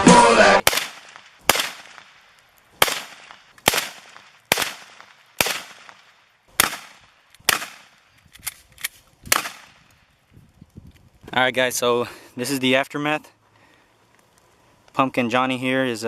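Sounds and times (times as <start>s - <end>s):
gunshots with echo: 0.6s - 2.2s, 2.8s - 8.0s.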